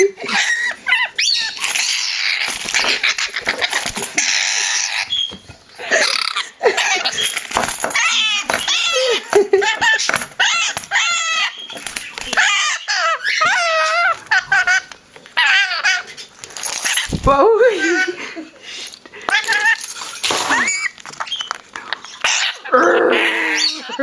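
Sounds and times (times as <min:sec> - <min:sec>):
lorikeet screeching: 0:00.3 - 0:07.4, 0:09.7 - 0:16.1.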